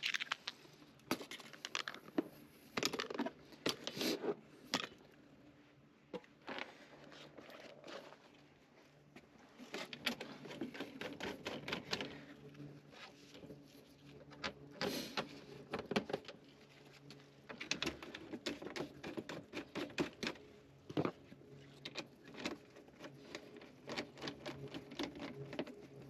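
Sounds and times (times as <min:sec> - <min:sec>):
things being handled: 0:00.0 - 0:05.0.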